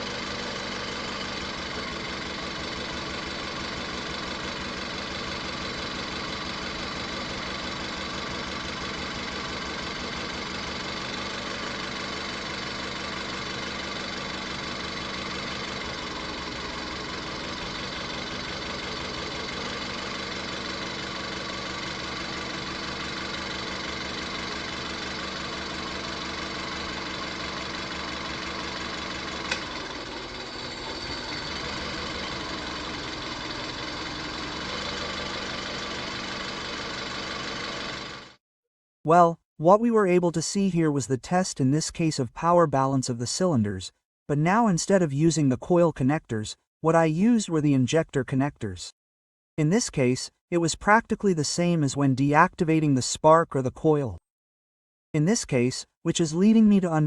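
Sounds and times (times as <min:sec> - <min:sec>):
car engine idling with misfire: 0:00.0 - 0:38.4.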